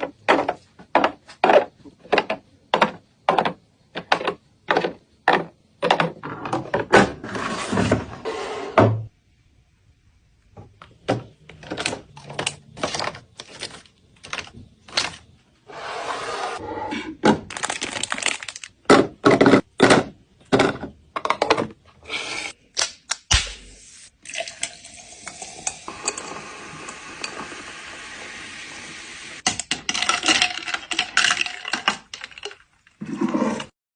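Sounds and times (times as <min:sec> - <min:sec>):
jars clinking and knocking: 0:29.4 - 0:33.7.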